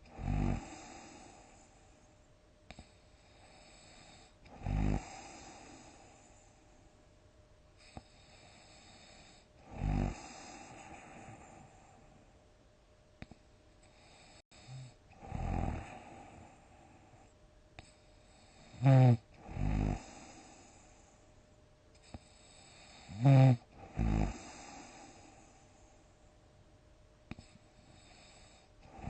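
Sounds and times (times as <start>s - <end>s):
person snoring: 0.0s - 1.8s, 2.7s - 6.4s, 7.8s - 12.1s, 14.0s - 16.8s, 17.8s - 20.9s, 22.0s - 25.6s, 27.3s - 29.0s.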